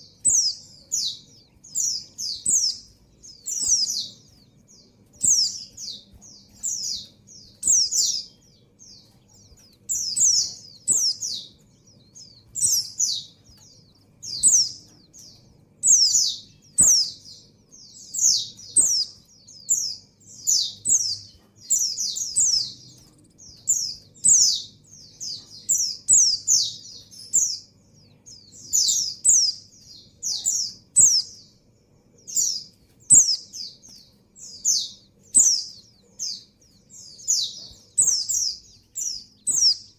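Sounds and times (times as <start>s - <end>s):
bird high downward chirps: 0.0s - 39.9s.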